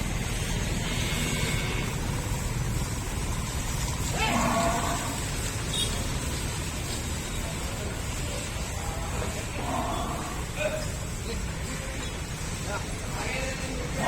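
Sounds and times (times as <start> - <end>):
buffalo call: 4.2 - 5.2.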